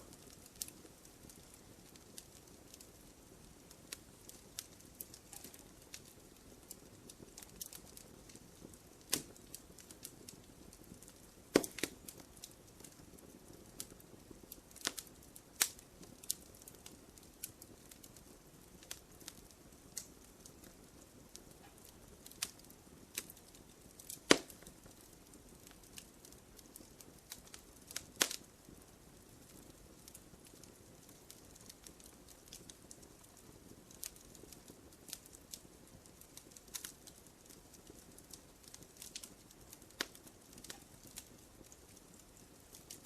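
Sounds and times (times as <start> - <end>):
wood fire crackling: 0.0 - 43.0.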